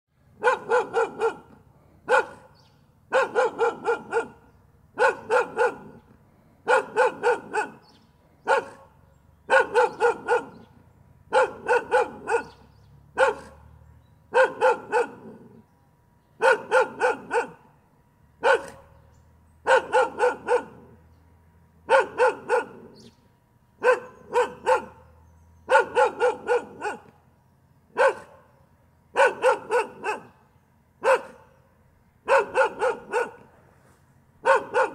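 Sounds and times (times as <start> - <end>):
dog barking: 0.4 - 6.0, 6.6 - 13.7, 14.3 - 15.6, 16.4 - 17.7, 18.4 - 19.0, 19.6 - 21.0, 21.8 - 23.1, 23.8 - 27.1, 27.9 - 28.5, 29.1 - 30.4, 31.0 - 31.6, 32.2 - 33.5, 34.4 - 34.9.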